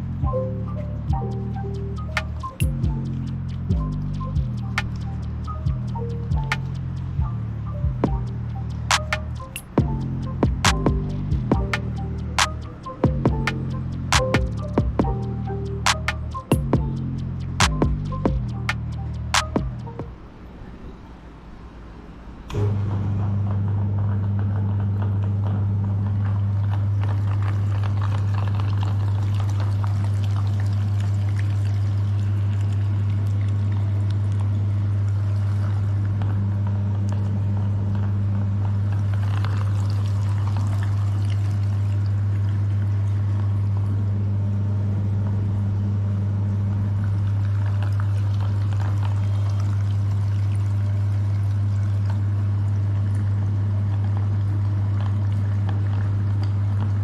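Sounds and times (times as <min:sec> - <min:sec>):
soft wet pouring and trickling: 0:26.6 - 0:36.2, 0:38.7 - 0:44.0, 0:47.0 - 0:53.5.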